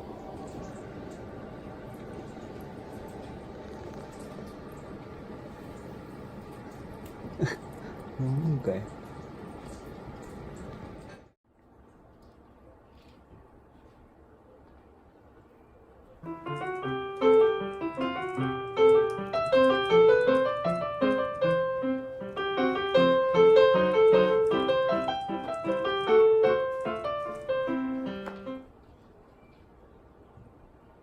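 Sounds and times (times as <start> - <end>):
short piano tune: 16.2 - 28.7.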